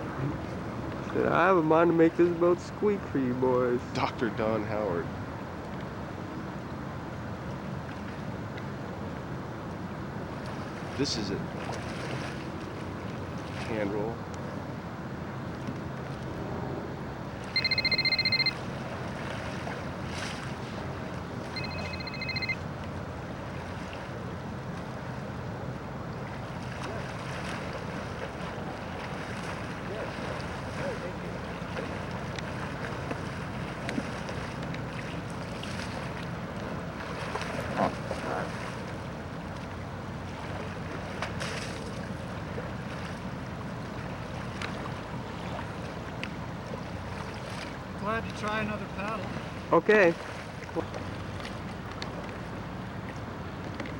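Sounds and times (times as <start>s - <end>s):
water lapping: 10.3s - 14.6s, 17.3s - 53.9s
high-pitched beep: 17.6s - 18.6s, 21.6s - 22.6s.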